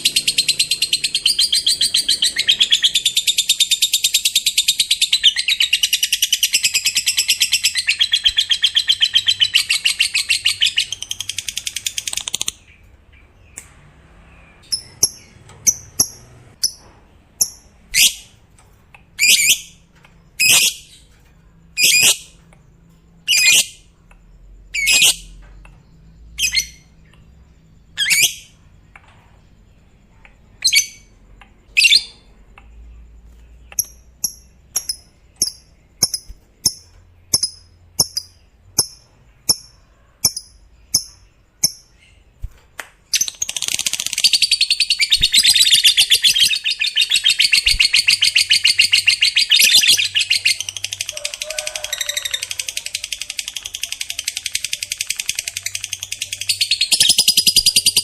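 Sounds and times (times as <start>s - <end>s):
lovebird calling and chattering: 0.0s - 13.6s, 19.2s - 21.1s, 21.7s - 22.4s, 23.2s - 23.9s, 24.7s - 27.3s, 27.9s - 28.6s, 33.2s - 42.4s, 43.1s - 58.0s.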